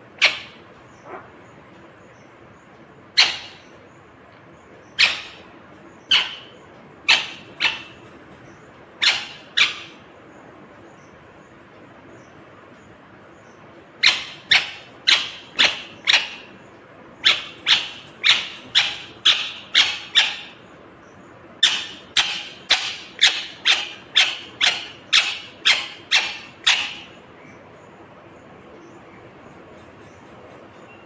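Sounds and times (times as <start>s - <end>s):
parakeet screeching: 0.2s - 1.3s, 3.2s - 3.7s, 5.0s - 6.5s, 7.1s - 8.1s, 9.0s - 10.0s, 14.0s - 16.5s, 17.2s - 20.6s, 21.6s - 27.2s.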